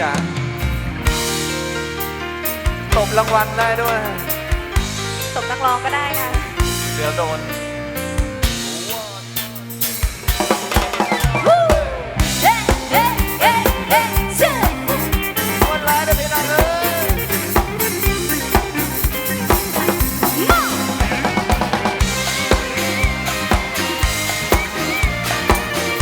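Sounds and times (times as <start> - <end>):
drum kit steady beat: 0.0 - 26.0
lead instrument sliding notes: 10.7 - 26.0.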